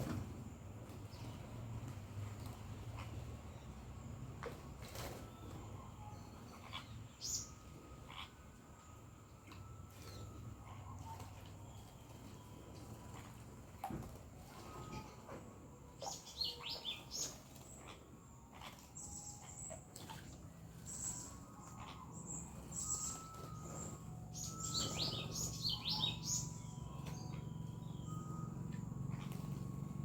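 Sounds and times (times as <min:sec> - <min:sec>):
low steady hum: 0:00.0 - 0:30.0
birds chirping: 0:04.8 - 0:09.0, 0:15.9 - 0:30.0.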